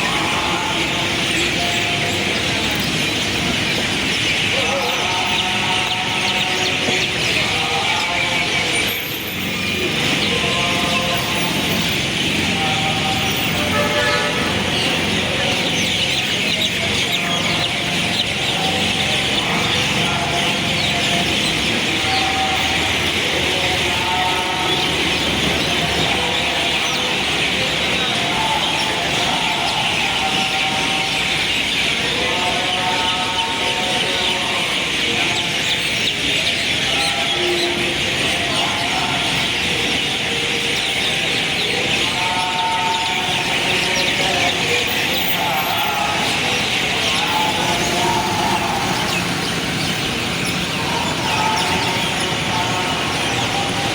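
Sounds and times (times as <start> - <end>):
birds chirping: 0.0 - 53.9
traffic: 0.0 - 53.9
vehicle horn toots: 13.6 - 14.8.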